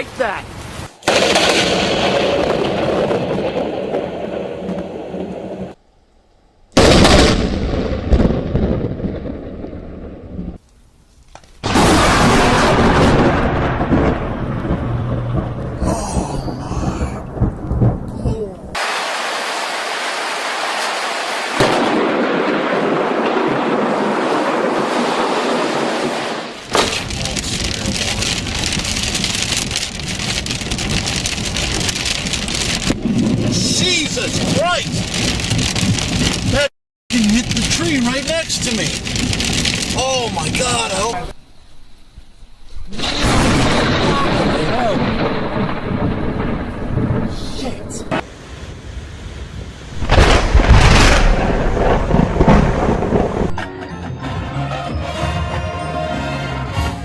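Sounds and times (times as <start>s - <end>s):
heavy rain: 0.0s - 5.8s, 11.3s - 41.4s, 42.8s - 53.6s
thunder: 1.0s - 5.8s, 6.8s - 10.6s, 11.6s - 19.0s, 21.6s - 36.7s, 42.9s - 53.7s.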